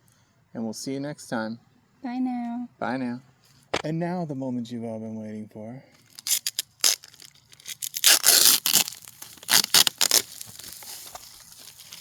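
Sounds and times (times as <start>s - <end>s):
packaging being torn open: 6.1s - 12.0s.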